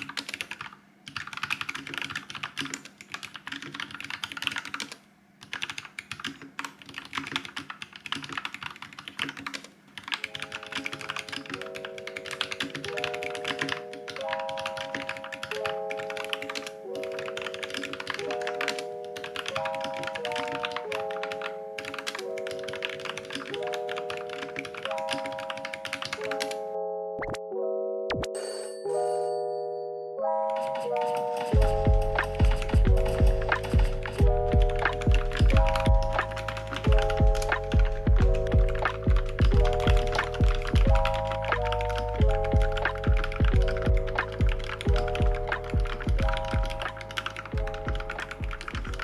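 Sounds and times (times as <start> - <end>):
rapid keyboard typing: 0.0 - 27.4, 30.4 - 49.0
music with slow chords: 29.9 - 49.0.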